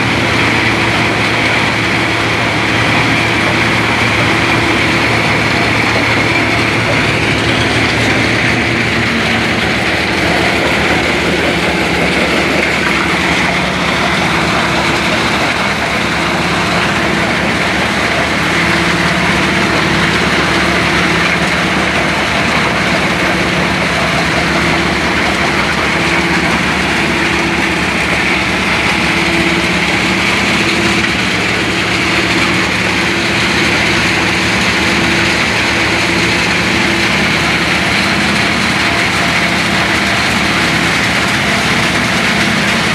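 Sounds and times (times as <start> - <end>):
engine hum: 0.0 - 42.9
stone crusher machine running: 0.0 - 42.9.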